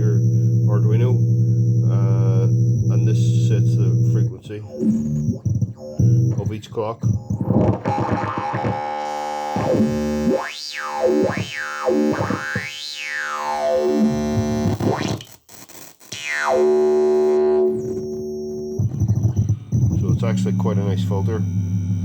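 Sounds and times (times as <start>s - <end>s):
synthesizer filter sweep: 0.0s - 15.2s.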